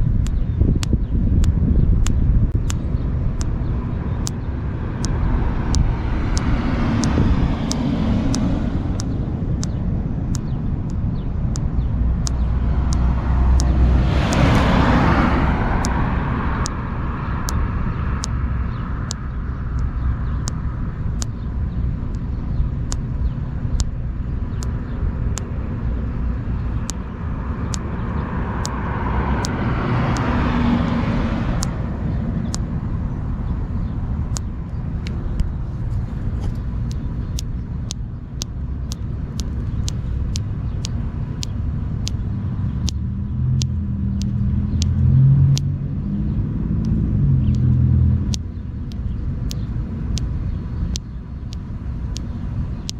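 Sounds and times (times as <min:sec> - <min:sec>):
road traffic rumble: 0:00.0 - 0:52.9
vehicles passing: 0:00.0 - 0:52.9
short sharp clicks: 0:05.0 - 0:16.8, 0:19.0 - 0:21.4, 0:29.4 - 0:30.4.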